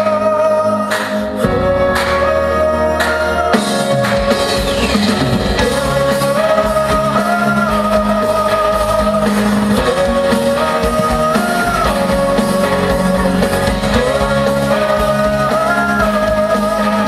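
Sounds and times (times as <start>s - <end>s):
instrumental pop-rock band music: 0.0s - 17.0s.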